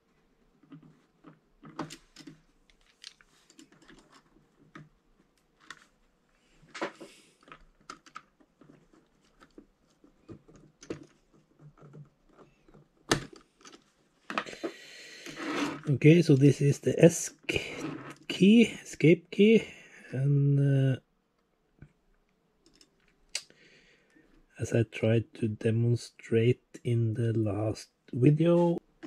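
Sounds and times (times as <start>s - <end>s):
scraping rustle: 15.2s - 16.1s.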